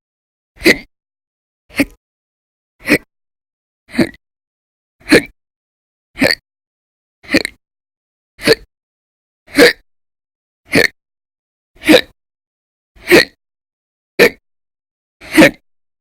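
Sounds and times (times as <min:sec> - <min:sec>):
woman hiccuping loudly: 0:06.2 - 0:06.4, 0:09.5 - 0:09.8, 0:10.7 - 0:11.0, 0:11.8 - 0:12.1, 0:13.0 - 0:13.4, 0:14.2 - 0:14.4.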